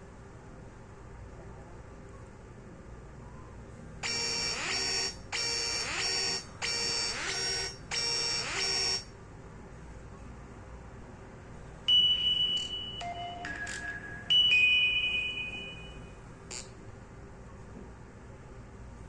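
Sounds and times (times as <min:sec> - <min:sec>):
phone ringtone beeping: 0:04.0 - 0:09.1, 0:11.9 - 0:16.2.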